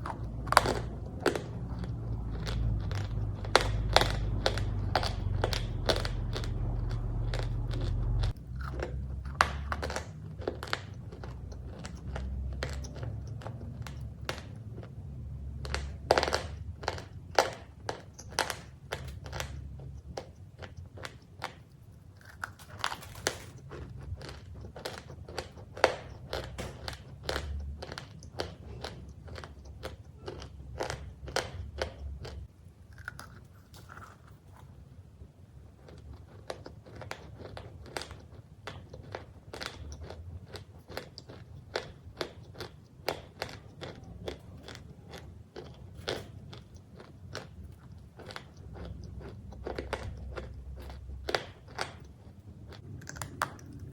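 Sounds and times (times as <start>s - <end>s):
low hum: 0.0s - 16.8s
cookies being crunched: 20.5s - 34.8s.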